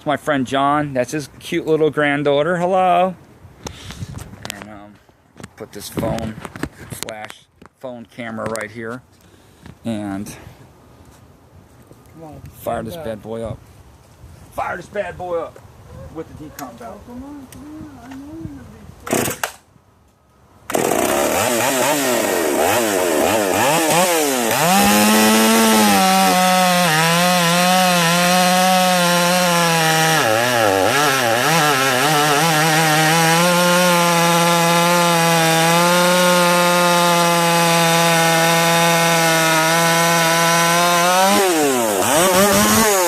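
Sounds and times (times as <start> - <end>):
chainsaw cutting wood: 19.0 - 19.6, 20.7 - 43.0.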